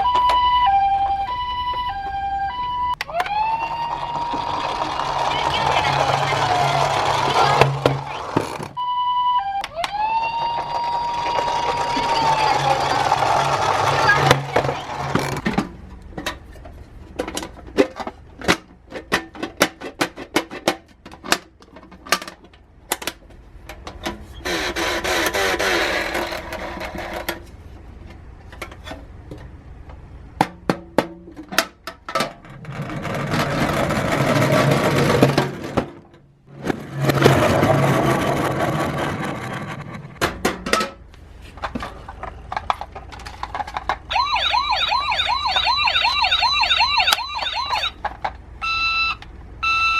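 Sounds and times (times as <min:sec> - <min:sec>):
toy cars clicking and knocking: 0:03.0 - 0:08.8, 0:09.6 - 0:16.5, 0:17.1 - 0:27.4, 0:41.6 - 0:49.9
toy cars rolling: 0:03.0 - 0:08.8, 0:09.6 - 0:29.1, 0:31.4 - 0:49.9.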